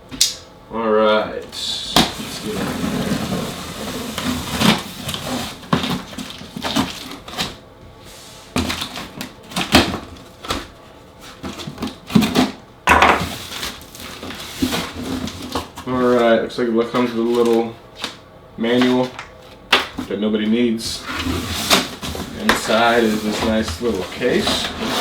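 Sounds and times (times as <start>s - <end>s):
cardboard box being unpacked: 1.9s - 7.6s, 21.0s - 25.0s.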